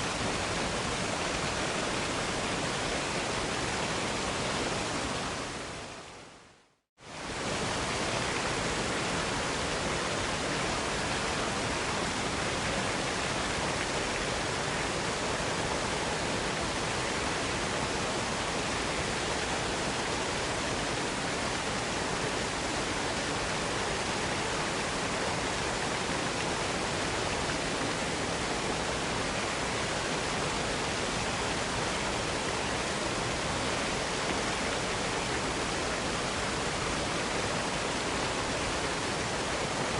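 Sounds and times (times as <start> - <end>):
waterfall rushing: 0.0 - 6.1, 7.1 - 39.9.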